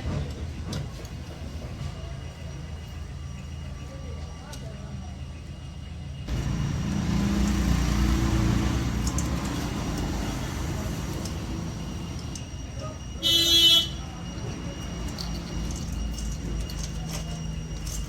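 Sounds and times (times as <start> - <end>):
road traffic rumble: 2.3 - 18.0
vehicle horn honk: 13.2 - 14.0.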